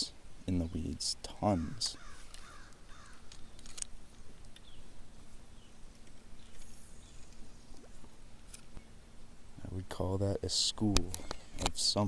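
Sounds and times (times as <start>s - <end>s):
faint low hum: 0.0s - 12.0s
light ticks: 10.9s - 11.8s.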